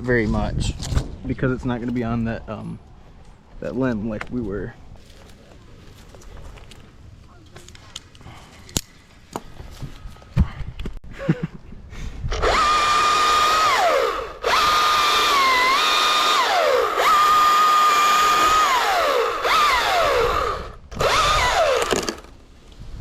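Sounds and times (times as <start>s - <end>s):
chainsaw revving: 12.4s - 22.3s.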